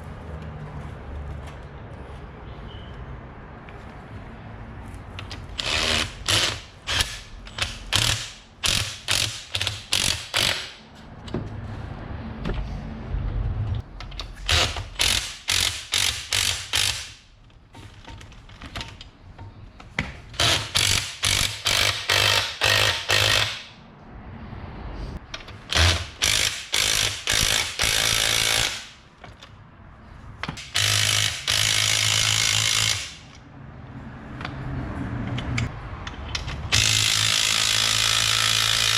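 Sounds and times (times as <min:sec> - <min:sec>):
impact wrench pulses: 0:05.2 - 0:10.8, 0:14.2 - 0:17.3, 0:20.3 - 0:23.8, 0:25.4 - 0:29.0, 0:30.5 - 0:33.4, 0:35.4 - 0:38.9.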